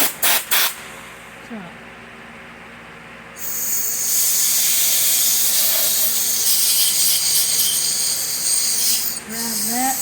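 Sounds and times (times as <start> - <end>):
compressed air hissing from nozzle: 0.0 - 0.8, 3.4 - 10.0.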